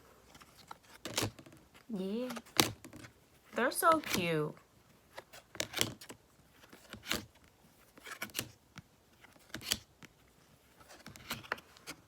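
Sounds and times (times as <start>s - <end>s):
cards clicking and snapping: 0.3s - 1.6s, 2.2s - 3.1s, 3.9s - 4.2s, 5.1s - 10.2s, 10.8s - 12.0s.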